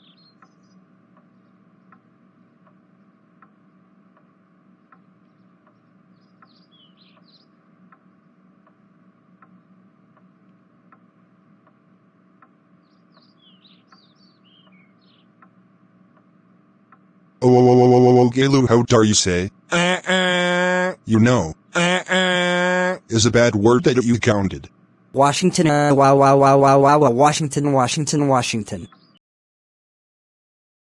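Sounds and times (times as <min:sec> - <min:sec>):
birds chirping: 0:00.0 - 0:03.3, 0:04.8 - 0:08.4, 0:12.6 - 0:15.6, 0:17.4 - 0:29.2
low steady hum: 0:00.0 - 0:29.2
clock ticking: 0:16.9 - 0:19.9, 0:20.6 - 0:29.1.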